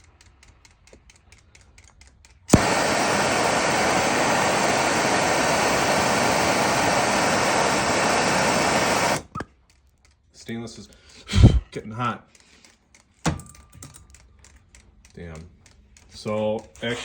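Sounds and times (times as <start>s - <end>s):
gas torch flame hissing: 2.5s - 9.4s, 11.3s - 11.6s
gas torch lighting pop: 2.5s - 9.5s.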